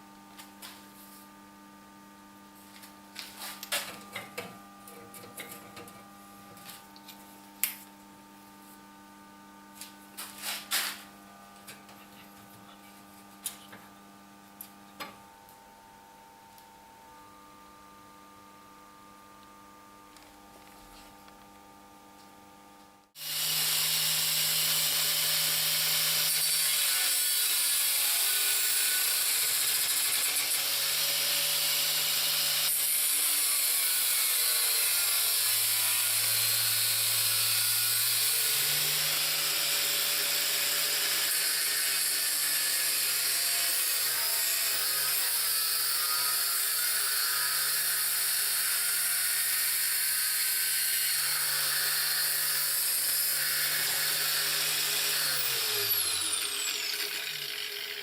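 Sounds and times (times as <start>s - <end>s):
angle grinder whining: 23.2s - 58.0s.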